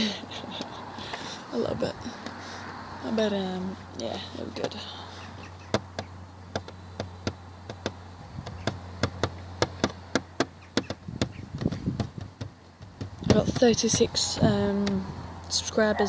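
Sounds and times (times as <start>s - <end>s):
sharp clicks or taps: 5.7s - 14.1s.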